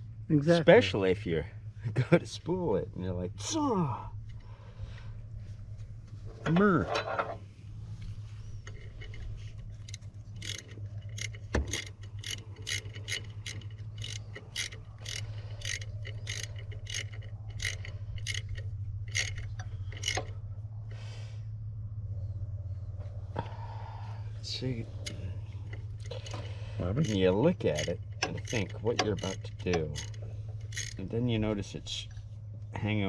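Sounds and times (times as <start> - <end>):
steady low hum: 0.0 - 33.0
ratchet wrench clicking: 8.6 - 20.3, 25.0 - 31.0.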